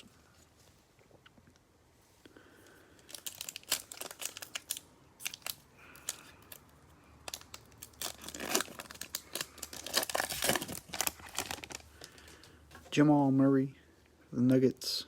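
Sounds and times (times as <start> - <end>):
card pack wrappers crinkling and tearing: 3.0 - 12.5.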